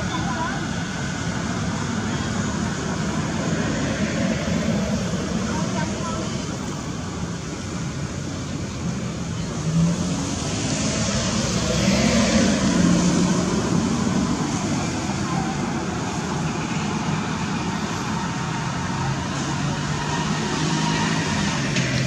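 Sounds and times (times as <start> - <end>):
road traffic: 0.0 - 22.0
vehicle passing: 9.6 - 22.0.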